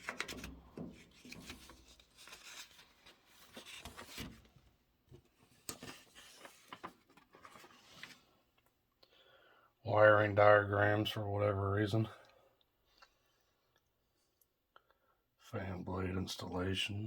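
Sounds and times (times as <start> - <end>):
paper pages rustling: 0.0 - 8.4.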